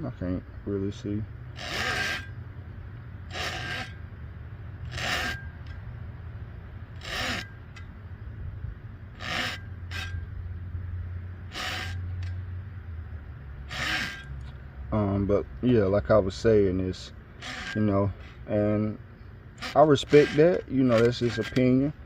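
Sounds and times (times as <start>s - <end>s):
steady low hum: 0.0s - 22.0s
handsaw rasping strokes: 1.6s - 2.3s, 3.3s - 4.0s, 4.8s - 5.4s, 7.0s - 7.5s, 11.5s - 12.0s, 13.7s - 14.3s, 19.6s - 20.6s.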